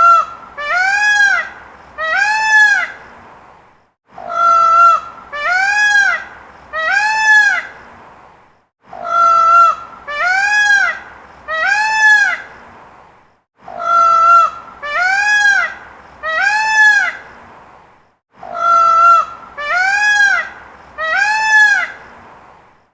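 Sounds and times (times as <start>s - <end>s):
peacock calling: 0.0s - 3.0s, 4.2s - 7.8s, 8.9s - 12.6s, 13.7s - 17.3s, 18.4s - 22.1s.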